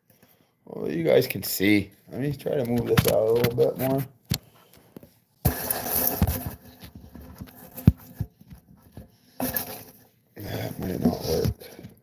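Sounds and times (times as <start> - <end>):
object scraping and rustling: 5.4 - 10.0.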